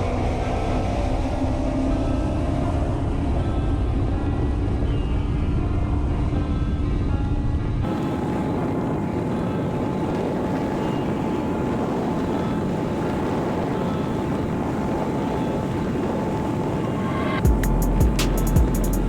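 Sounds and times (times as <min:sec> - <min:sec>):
wind on microphone: 0:00.0 - 0:19.0
boat engine: 0:07.8 - 0:19.0
faint steady whine: 0:07.8 - 0:19.0.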